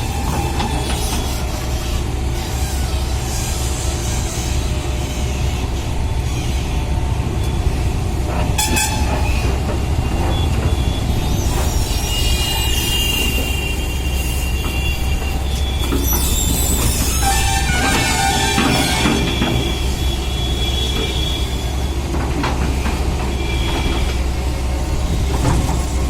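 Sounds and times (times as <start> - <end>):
heavy machine rumbling: 0.0 - 26.0
high metallic squealing: 8.6 - 22.0.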